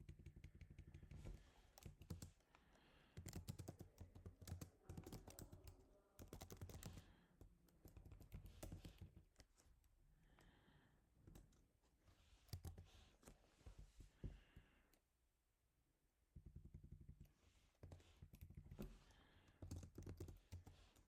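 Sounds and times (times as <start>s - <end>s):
typing on computer keyboard: 0.0s - 1.2s, 1.8s - 2.4s, 3.1s - 9.5s, 12.5s - 12.9s, 16.4s - 18.9s, 19.5s - 21.0s.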